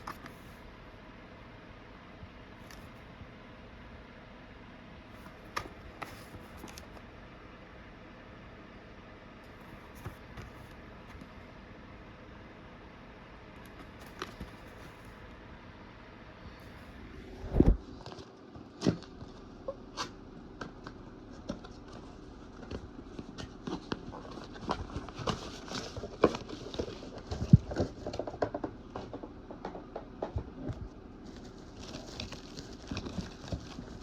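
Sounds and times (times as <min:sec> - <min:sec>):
cardboard box rustling and knocking: 0:09.6 - 0:11.3, 0:13.8 - 0:15.2.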